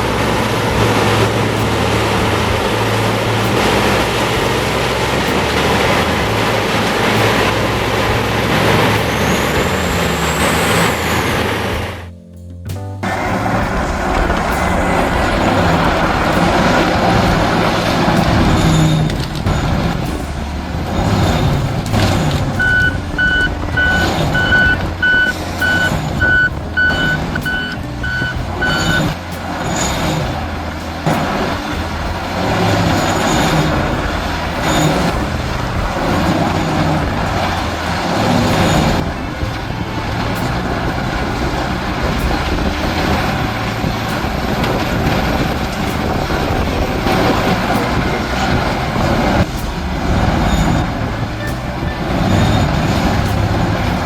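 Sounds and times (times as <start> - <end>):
heavy machine engine running: 0.0 - 54.0
backup alarm beeping: 14.2 - 29.2.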